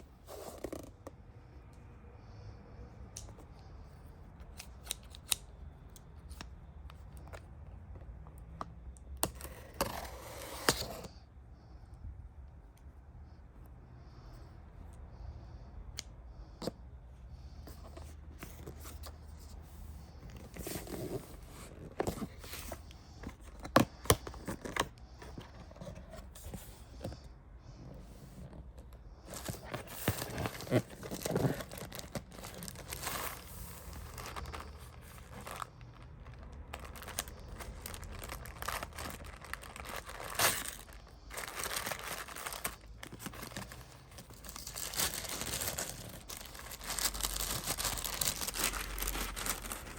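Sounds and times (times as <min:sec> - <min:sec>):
packaging tearing and crinkling: 0:29.3 - 0:49.9.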